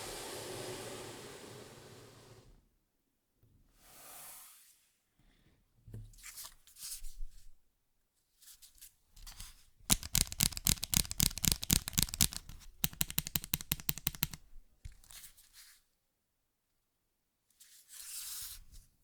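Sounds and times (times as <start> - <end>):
mechanical keyboard typing: 9.9 - 14.4.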